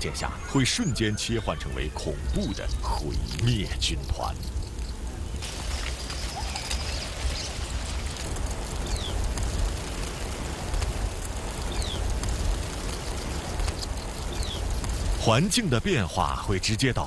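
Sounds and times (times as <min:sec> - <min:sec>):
locust swarm whirring: 0:02.2 - 0:15.7.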